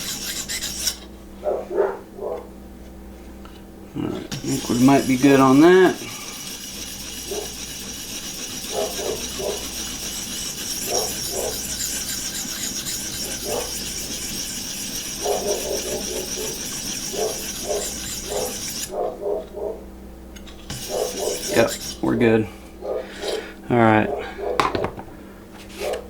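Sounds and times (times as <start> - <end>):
sharpening stone rasping on knife: 0.0 - 1.1, 4.3 - 18.9, 20.6 - 22.1.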